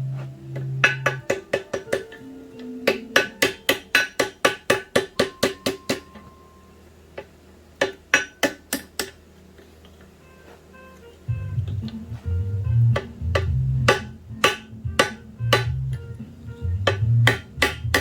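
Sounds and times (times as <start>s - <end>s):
hammer ringing on anvil: 2.9s - 6.6s.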